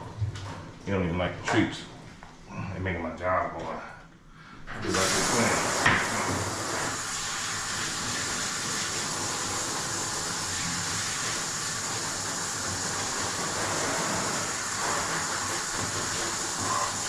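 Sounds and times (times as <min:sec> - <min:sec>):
steady rushing hiss: 0:04.8 - 0:17.0.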